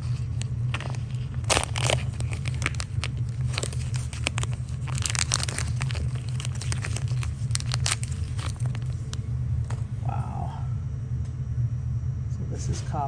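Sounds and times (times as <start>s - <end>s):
packaging crinkling and tearing: 0.0s - 9.2s
steady low hum: 0.0s - 13.0s.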